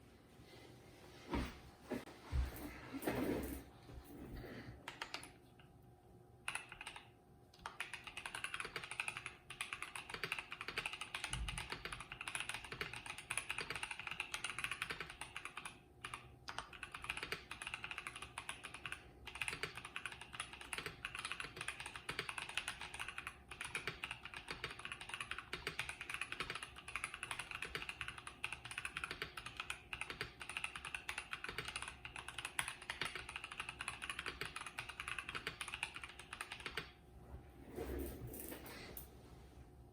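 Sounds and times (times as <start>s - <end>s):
fast typing on mechanical keyboard: 6.4s - 37.0s.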